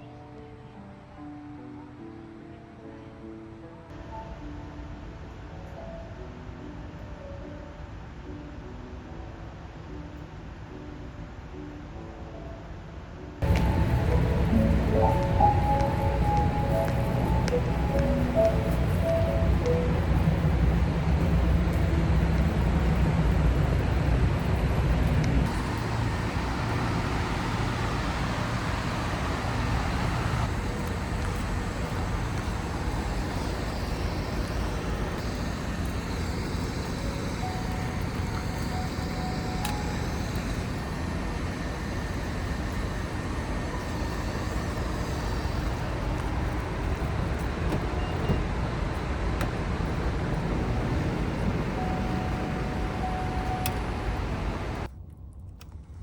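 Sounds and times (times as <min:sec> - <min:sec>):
low rumble: 0:13.4 - 0:54.9
road and tyre noise: 0:13.4 - 0:55.0.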